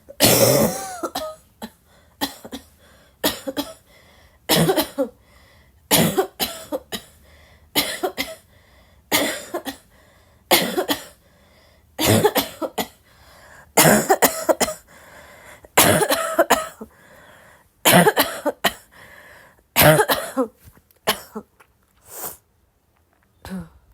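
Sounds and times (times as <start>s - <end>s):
person coughing: 0.1s - 3.8s, 4.5s - 5.2s, 5.9s - 7.2s, 7.8s - 8.4s, 9.1s - 9.9s, 10.5s - 11.2s, 12.0s - 13.0s, 13.8s - 14.9s, 15.7s - 16.9s, 17.9s - 18.9s, 19.8s - 21.5s.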